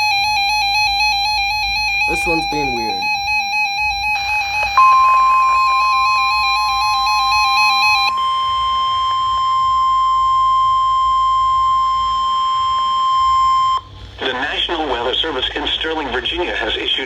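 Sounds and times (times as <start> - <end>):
steady warning alert tone: 4.8 - 6.8
warbling electronic alarm: 4.8 - 7.0
steady higher beep: 4.8 - 7.2.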